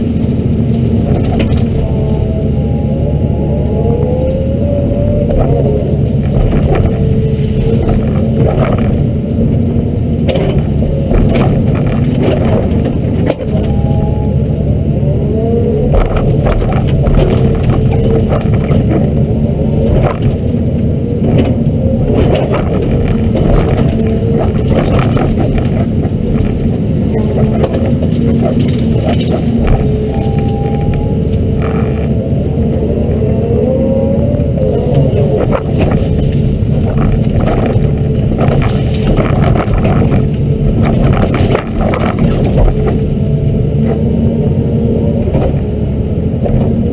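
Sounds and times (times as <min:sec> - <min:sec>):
excavator diesel engine running: 0:00.0 - 0:46.9
hydraulic whine: 0:00.0 - 0:46.9
cracks and knocks of brush: 0:05.3 - 0:09.6, 0:10.2 - 0:13.8, 0:15.9 - 0:32.1, 0:35.2 - 0:43.1.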